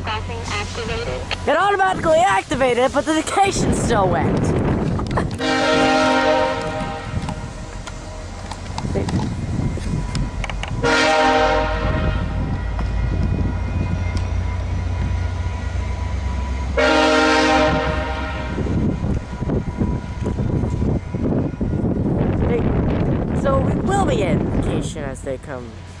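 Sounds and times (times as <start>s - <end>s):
steady low rumble: 0.0s - 16.8s, 17.4s - 26.0s
diesel locomotive horn blasts: 5.3s - 7.5s, 10.8s - 12.6s, 16.7s - 18.8s.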